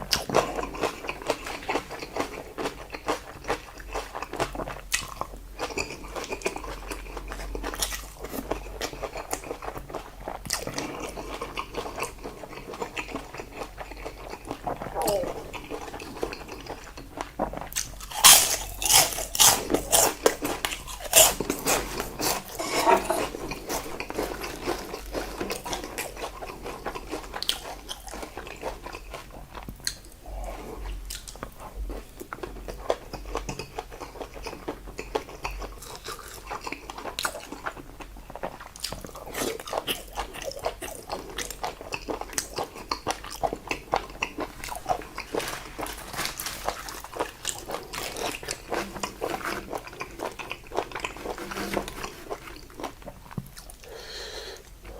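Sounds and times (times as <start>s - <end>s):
person biting and chewing: 15.8s - 26.1s, 44.2s - 53.9s.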